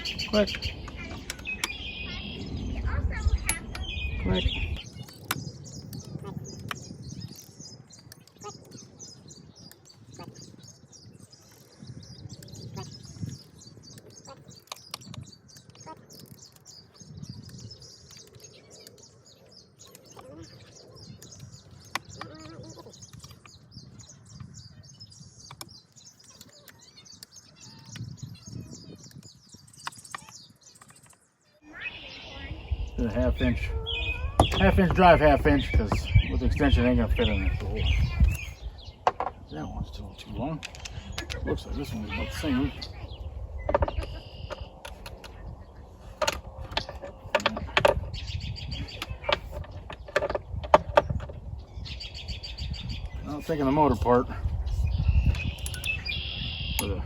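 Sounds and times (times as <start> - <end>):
small birds chirping: 0.0 - 57.0
hand tools clicking and knocking: 46.1 - 48.0.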